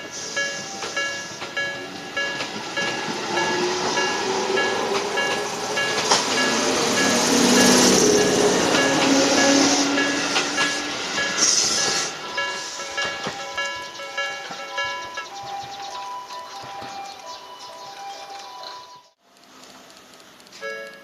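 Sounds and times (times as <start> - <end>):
high hiss: 0.0 - 4.8, 6.6 - 13.3
train running and wheel clatter: 0.0 - 21.0.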